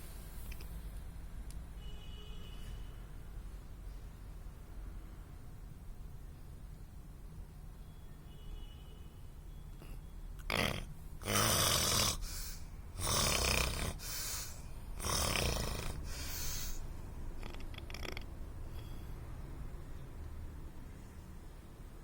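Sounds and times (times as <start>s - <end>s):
person snoring: 10.4s - 16.8s, 17.4s - 18.2s.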